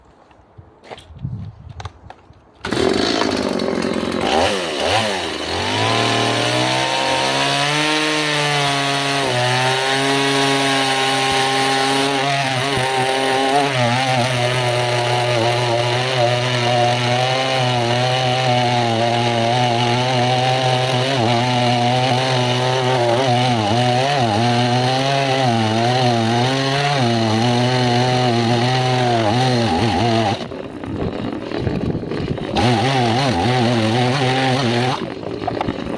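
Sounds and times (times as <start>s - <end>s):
chainsaw cutting wood: 2.6s - 35.9s.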